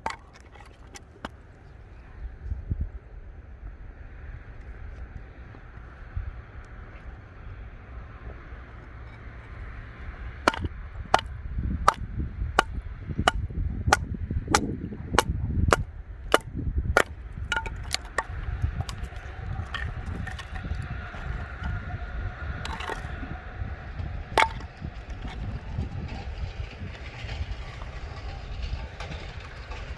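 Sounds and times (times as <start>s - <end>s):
wind rumbling on microphone: 1.4s - 29.9s
scattered knocks: 10.4s - 11.3s, 12.6s - 21.8s, 24.0s - 26.2s.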